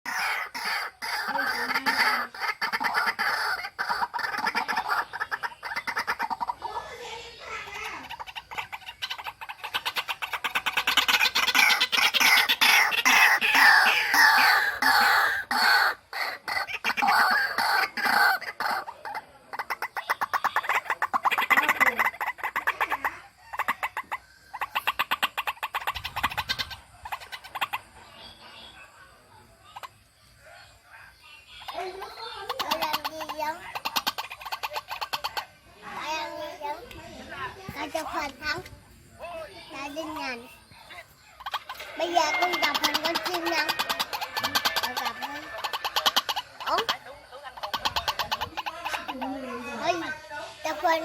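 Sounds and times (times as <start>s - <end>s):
bird calling harsh repeated notes: 0.1s - 27.9s, 41.2s - 49.4s.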